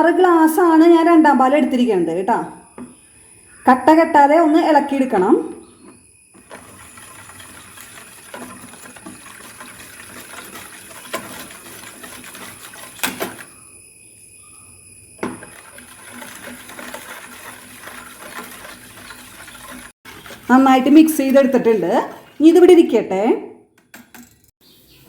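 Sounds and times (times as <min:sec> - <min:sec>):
spoon scraping bowl: 0:06.4 - 0:13.6, 0:15.2 - 0:22.8
wet swishing stirring: 0:06.4 - 0:13.6, 0:15.2 - 0:22.8.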